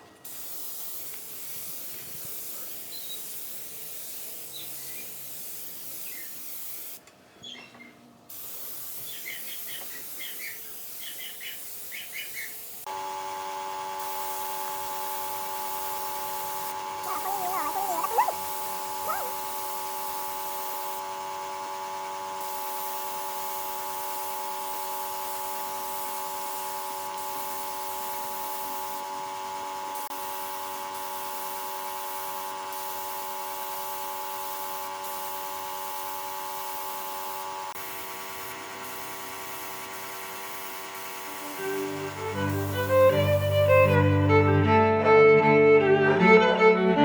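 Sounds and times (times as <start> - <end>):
electric power tool motor whine: 12.9 - 44.4.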